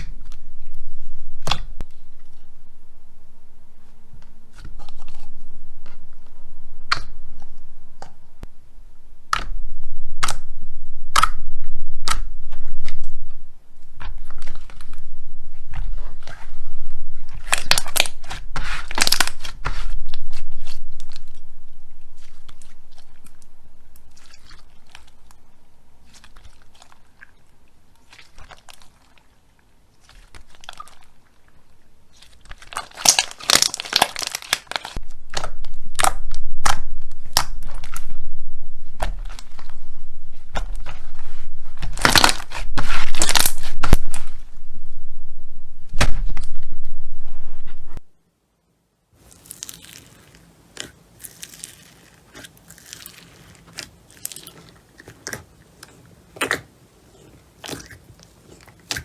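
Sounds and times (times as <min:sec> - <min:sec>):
slime crackling and popping: 0:11.1 - 0:11.4, 0:12.0 - 0:13.2, 0:17.2 - 0:21.5, 0:32.1 - 0:38.2, 0:38.9 - 0:44.4, 0:49.2 - 0:56.7, 0:57.6 - 0:59.0.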